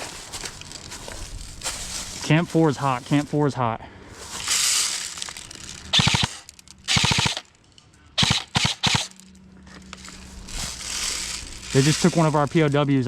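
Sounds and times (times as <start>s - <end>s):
airsoft guns firing bursts: 5.9s - 7.5s, 8.2s - 9.2s.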